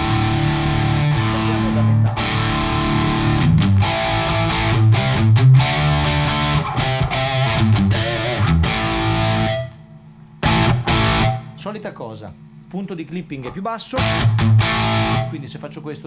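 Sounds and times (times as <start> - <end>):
distorted electric guitar riffs: 0.0 - 9.8, 10.4 - 11.6, 14.0 - 15.5.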